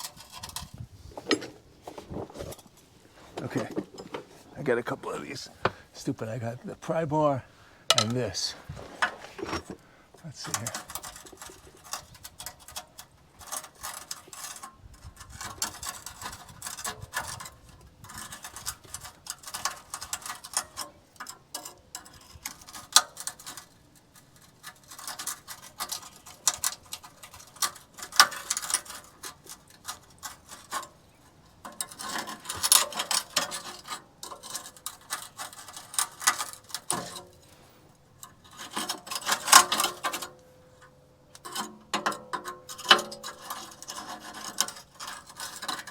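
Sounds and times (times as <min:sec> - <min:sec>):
metallic clicking and scraping: 0:00.0 - 0:45.9
sharp metal knocks: 0:07.9 - 0:08.2.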